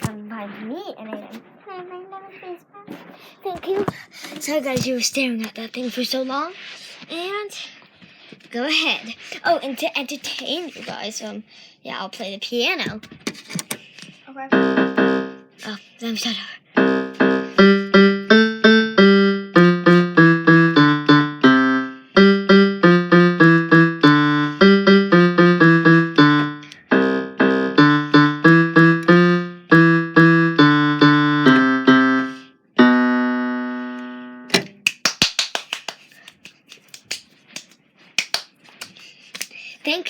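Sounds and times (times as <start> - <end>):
piano tune: 14.5 - 15.6, 16.7 - 34.7.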